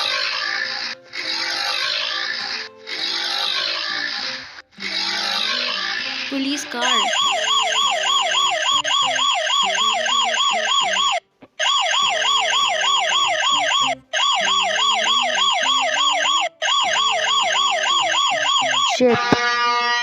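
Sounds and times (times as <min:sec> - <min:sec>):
police siren yelping: 0:00.0 - 0:20.0.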